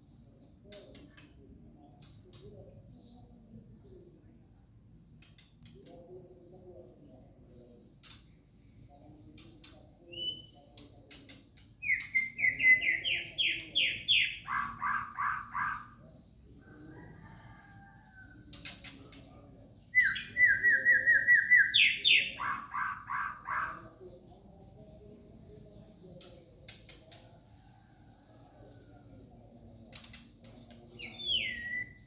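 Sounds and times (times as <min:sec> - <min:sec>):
bird singing repeated notes: 0:10.0 - 0:10.6, 0:11.8 - 0:16.0, 0:19.9 - 0:23.8, 0:30.9 - 0:32.0.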